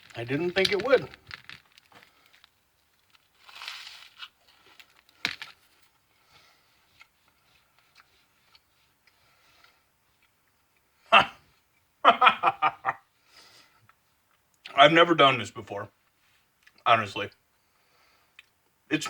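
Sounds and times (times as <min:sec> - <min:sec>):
toast crunching: 0:00.0 - 0:10.4.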